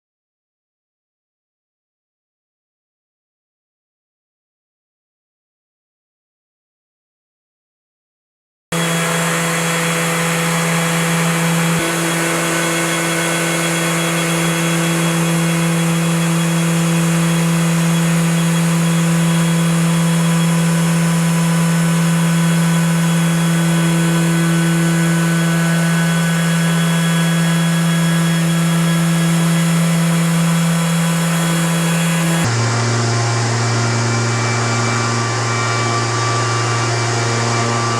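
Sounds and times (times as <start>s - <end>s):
electric router spinning: 8.7s - 37.9s.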